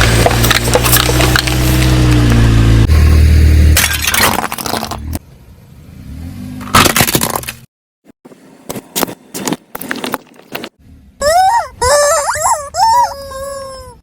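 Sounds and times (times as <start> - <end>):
objects crunching under tyres: 0.0 - 5.2, 6.6 - 7.7, 8.6 - 10.8.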